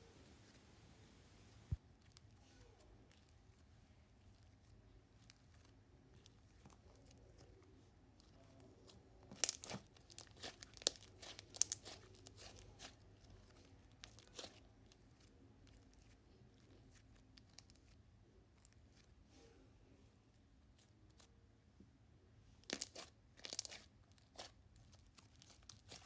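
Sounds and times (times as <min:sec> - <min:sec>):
slime crackling and popping: 0:09.3 - 0:12.9, 0:22.7 - 0:24.5.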